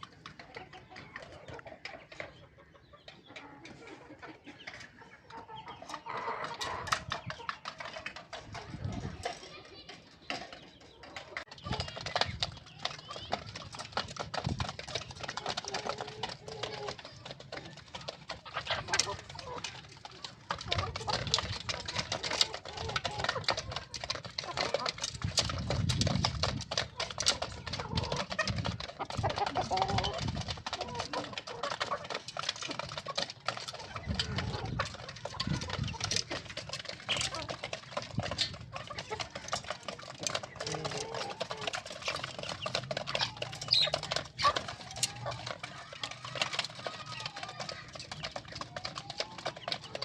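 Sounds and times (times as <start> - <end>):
chicks cheeping: 0.0 - 50.0
hens clucking: 0.0 - 50.0
rapid taps and clicks: 11.1 - 50.0.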